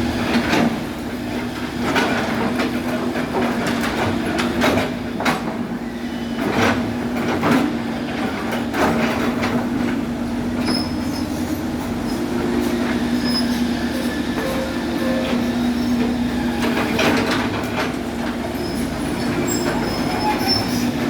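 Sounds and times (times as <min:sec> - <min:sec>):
excavator hum: 0:06.4 - 0:21.0
short high squeaks: 0:13.2 - 0:16.8.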